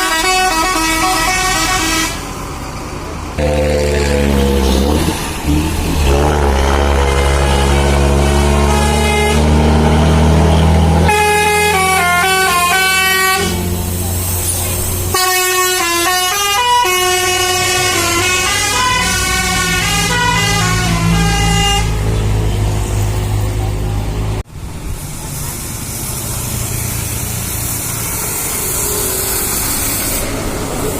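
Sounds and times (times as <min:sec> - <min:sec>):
bus horn playing tunes: 0:00.0 - 0:02.3, 0:03.4 - 0:05.0, 0:06.0 - 0:14.0, 0:15.0 - 0:22.1
bus engine running: 0:00.0 - 0:30.9.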